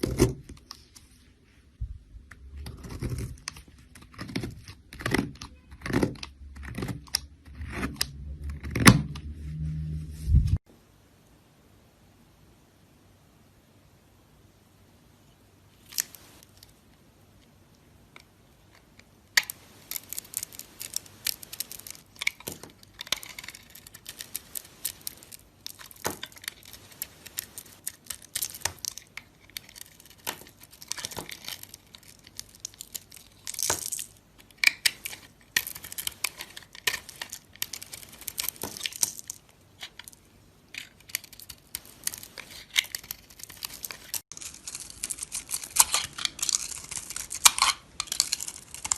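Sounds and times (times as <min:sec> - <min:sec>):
knife cutting soap crackling: 0:00.0 - 0:00.8, 0:02.4 - 0:08.9, 0:18.7 - 0:48.9.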